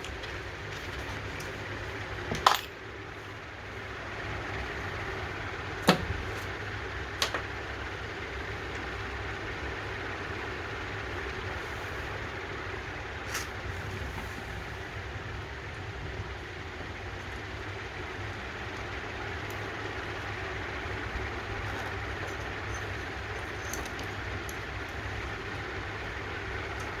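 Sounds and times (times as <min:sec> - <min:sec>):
steady low hum: 0:00.0 - 0:27.0.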